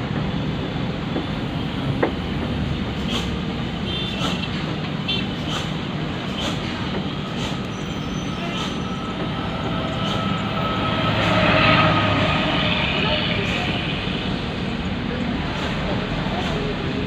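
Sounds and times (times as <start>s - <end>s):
bus engine and road noise: 0.0s - 17.0s.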